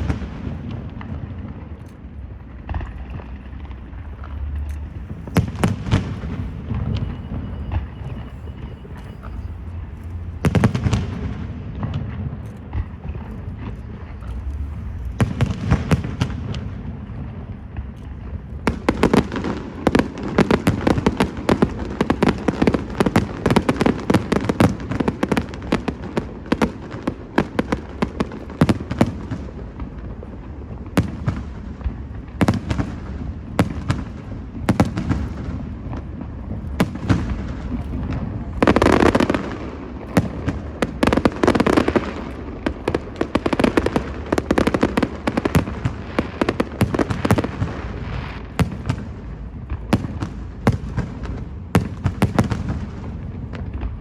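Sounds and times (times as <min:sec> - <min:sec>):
fireworks crackling and popping: 0:00.0 - 0:54.0.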